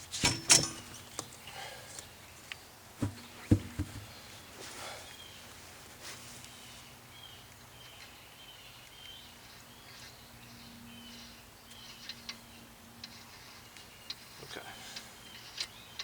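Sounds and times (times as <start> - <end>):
bird chirping: 6.5 - 16.0.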